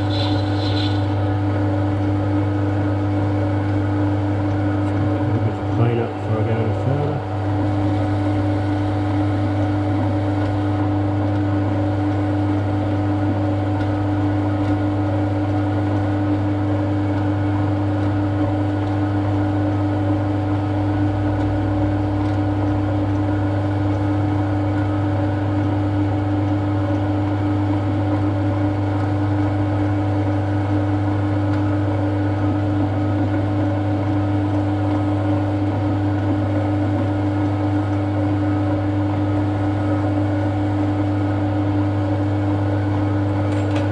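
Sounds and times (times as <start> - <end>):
electric motor humming: 0.0 - 1.4, 4.8 - 10.9.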